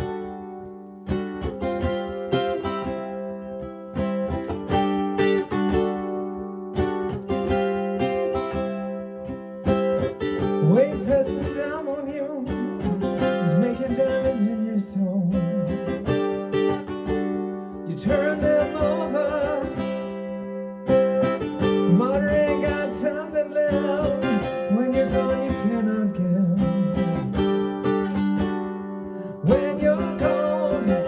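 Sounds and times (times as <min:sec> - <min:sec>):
ukulele strumming chords: 0:00.0 - 0:31.0
person singing: 0:10.2 - 0:27.5, 0:28.5 - 0:31.0.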